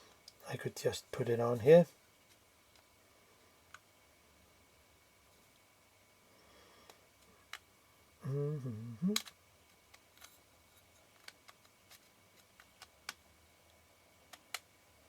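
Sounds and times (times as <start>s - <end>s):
person humming: 8.2s - 9.3s.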